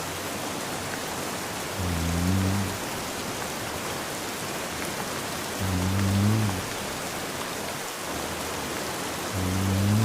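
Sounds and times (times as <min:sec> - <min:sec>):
steady rain: 0:00.0 - 0:10.0
man snoring: 0:01.8 - 0:02.8, 0:05.6 - 0:06.8, 0:09.3 - 0:10.0.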